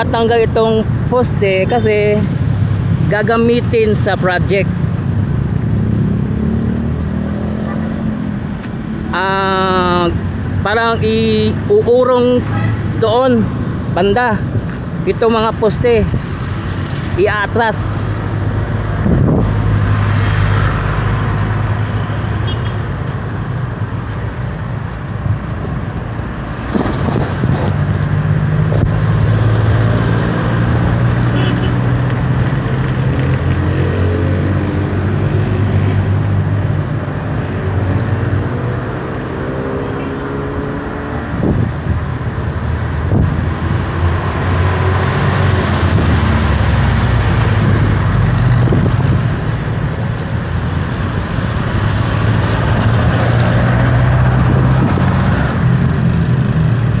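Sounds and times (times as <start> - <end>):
road traffic engines: 0.0 - 57.0
vehicle accelerating past: 5.7 - 8.2.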